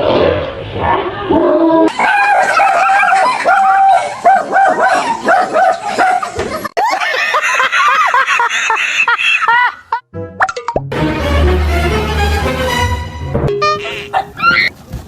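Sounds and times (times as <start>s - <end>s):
dog barking and yelping: 1.9s - 6.6s, 13.8s - 14.7s.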